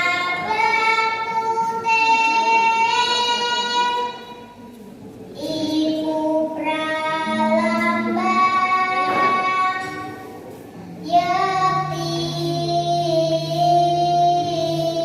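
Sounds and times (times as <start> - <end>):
child singing solo: 5.4 - 10.2, 11.0 - 15.0.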